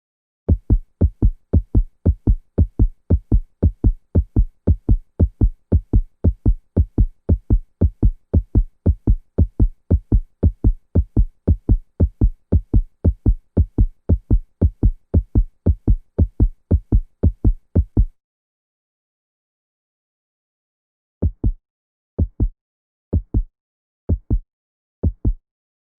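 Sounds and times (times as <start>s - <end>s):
heartbeat thumps: 0.5s - 18.2s, 21.2s - 21.6s, 22.2s - 22.6s, 23.2s - 23.5s, 24.1s - 24.4s, 25.0s - 25.4s.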